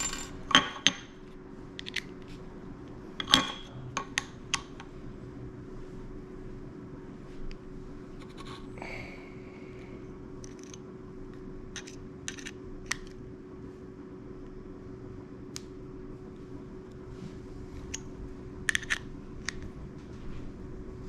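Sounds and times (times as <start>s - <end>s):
steady hum: 0.0s - 21.0s
metallic clicks of bolt and key: 11.8s - 13.1s.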